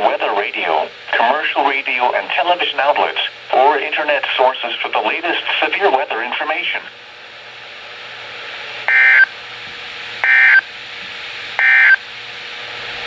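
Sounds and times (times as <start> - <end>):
radio static hiss: 0.0 - 7.0, 8.8 - 9.4, 10.2 - 10.6, 11.6 - 12.0
digital tone bursts: 8.9 - 9.3, 10.2 - 10.6, 11.6 - 12.0.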